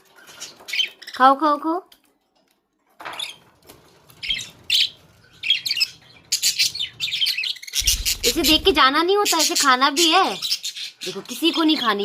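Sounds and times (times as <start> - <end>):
budgerigars chirping: 4.2 - 11.2.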